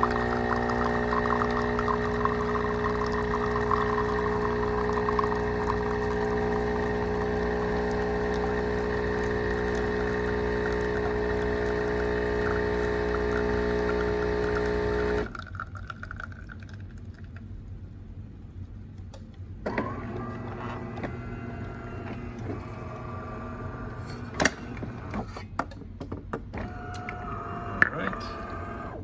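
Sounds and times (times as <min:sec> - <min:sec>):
soft steady machine tone: 0:00.0 - 0:15.3
espresso machine pump humming: 0:00.0 - 0:15.4, 0:19.7 - 0:25.2, 0:26.6 - 0:29.0.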